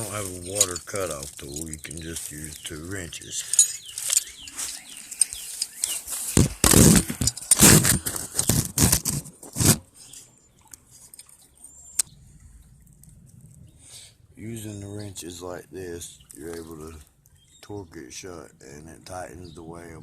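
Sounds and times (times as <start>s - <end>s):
wrenches scraping and knocking: 0.0s - 10.3s
rustling: 0.0s - 11.5s
sharp metal click: 3.4s - 8.6s.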